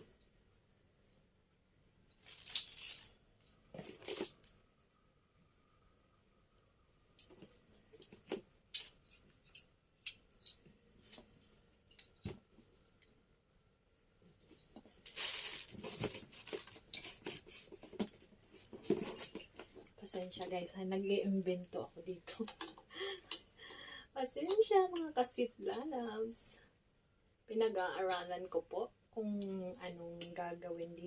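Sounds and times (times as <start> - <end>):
rustling of parts: 2.1 - 4.6, 7.1 - 13.2, 14.3 - 20.6.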